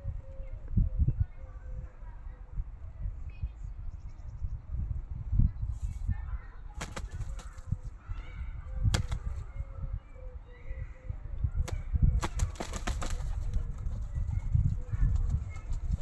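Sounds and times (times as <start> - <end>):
sharp wing claps: 6.8 - 7.8, 8.8 - 9.4, 11.6 - 13.6
pigeons flapping: 6.8 - 7.9, 8.9 - 9.4, 11.6 - 16.0.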